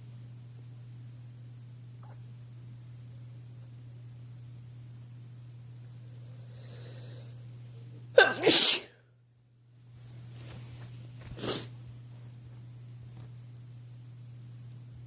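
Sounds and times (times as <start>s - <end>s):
steady low hum: 0.0s - 15.0s
person sneezing: 8.2s - 9.0s, 11.3s - 11.7s.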